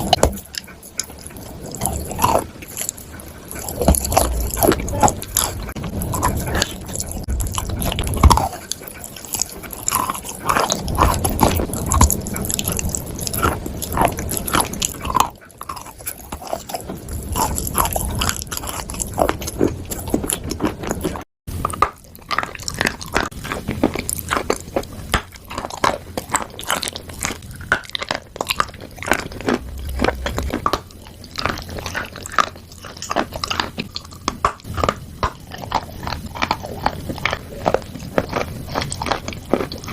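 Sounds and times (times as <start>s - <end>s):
person chewing crunchy chalk: 0.0s - 39.9s.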